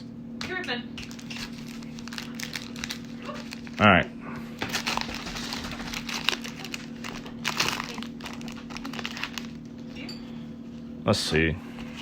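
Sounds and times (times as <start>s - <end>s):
wrapper crinkling: 1.0s - 3.9s, 4.6s - 9.9s.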